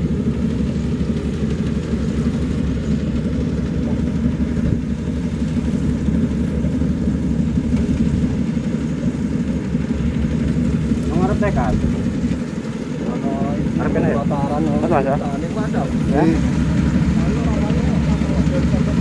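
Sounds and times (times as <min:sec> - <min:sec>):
combine harvester drone: 0:00.0 - 0:19.0.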